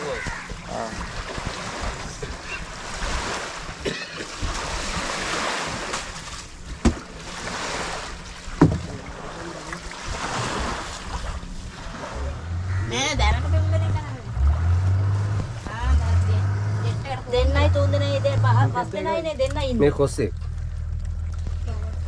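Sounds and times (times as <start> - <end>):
waves washing: 0.0 - 21.8
sharp knocks: 8.6 - 9.0.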